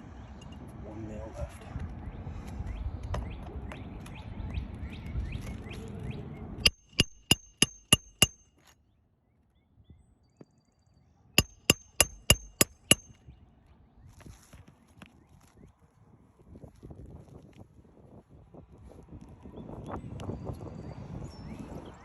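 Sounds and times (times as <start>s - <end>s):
hammer blows on nails: 6.6s - 8.4s, 11.4s - 13.1s.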